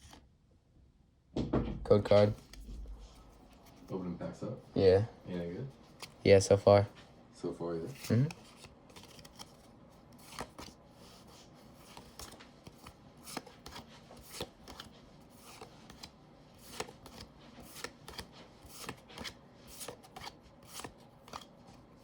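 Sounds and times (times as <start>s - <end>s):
trading cards flicked and rubbed: 2.1s - 3.9s, 5.9s - 6.2s, 7.9s - 22.0s.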